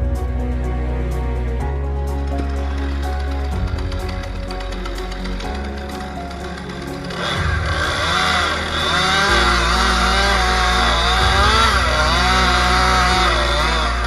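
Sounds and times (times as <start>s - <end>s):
chainsaw cutting wood: 7.1s - 14.0s.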